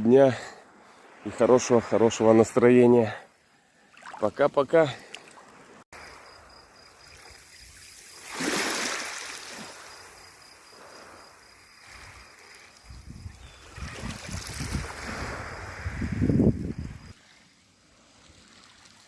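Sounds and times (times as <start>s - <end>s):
sea water washing and splashing: 7.0s - 11.1s, 13.7s - 16.2s.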